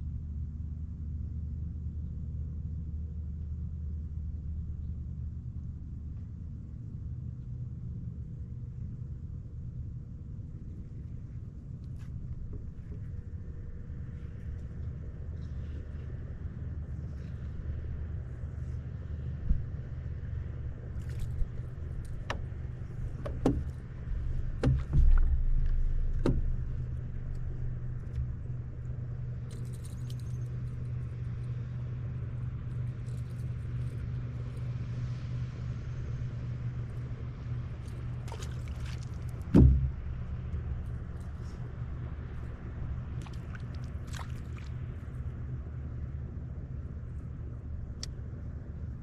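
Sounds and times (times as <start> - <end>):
engine humming: 9.8 - 49.0
sharp knocks and thumps: 24.6 - 26.7, 39.5 - 40.3.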